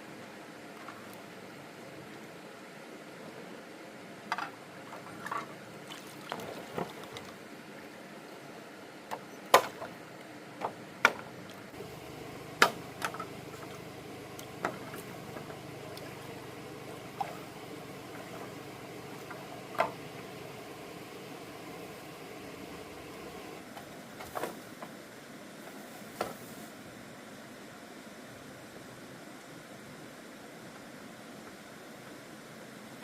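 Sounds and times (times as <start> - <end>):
steady low hiss: 0.0 - 33.0
faint low hum: 11.2 - 23.6.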